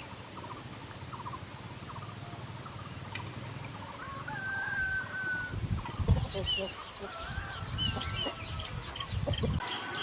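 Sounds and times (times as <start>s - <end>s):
steady low hum: 0.0s - 6.4s
chickens clucking and peeping: 0.0s - 10.0s.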